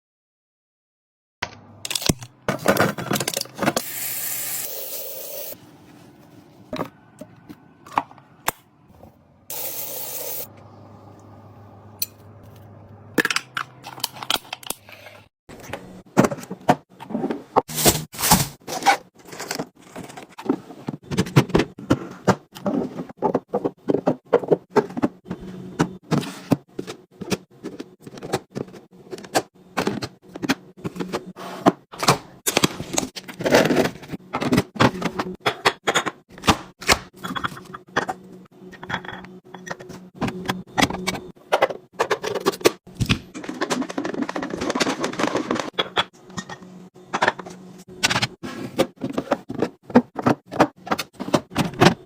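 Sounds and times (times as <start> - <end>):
drink packs clattering: 1.9 - 3.9, 43.3 - 45.8.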